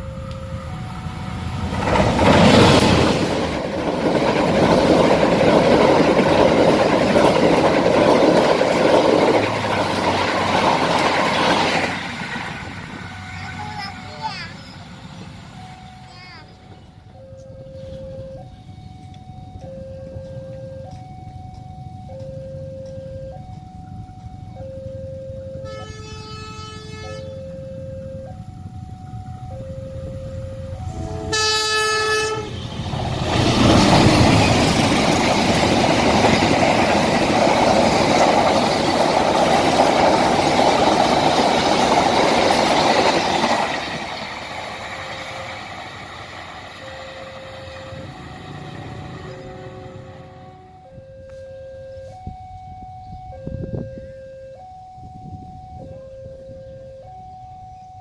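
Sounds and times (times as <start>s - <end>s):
two-tone hi-lo siren: 0.0s - 1.8s, 15.5s - 32.9s, 44.9s - 58.0s
train passing with rumble: 0.0s - 58.0s
train horn blast: 25.6s - 27.5s, 30.9s - 33.0s, 47.0s - 51.4s.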